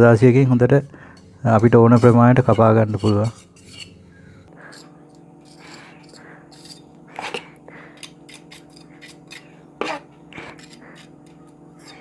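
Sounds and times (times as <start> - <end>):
low hum: 0.0 - 7.1
metal scraper scraping plaster: 0.0 - 12.0.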